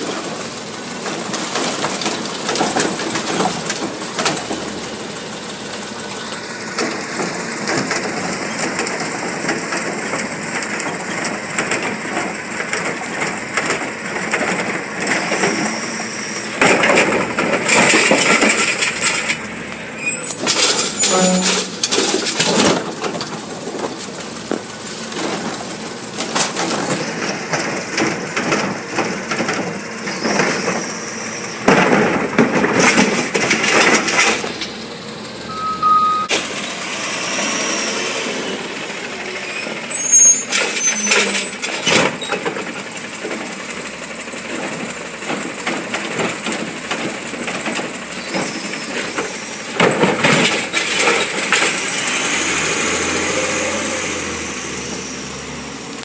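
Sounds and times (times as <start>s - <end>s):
truck engine running under load: 0.0s - 56.0s
loud clattering bangs of bins: 1.0s - 5.0s, 16.6s - 19.6s, 20.4s - 30.9s, 31.6s - 34.8s, 44.4s - 53.4s.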